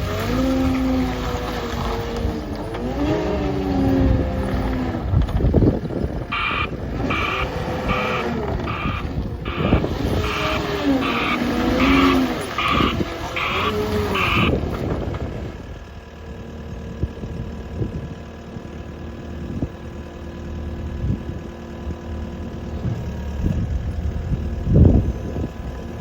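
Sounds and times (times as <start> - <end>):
diesel engine revving: 0.0 - 18.0
backup alarm beeping: 6.3 - 14.6.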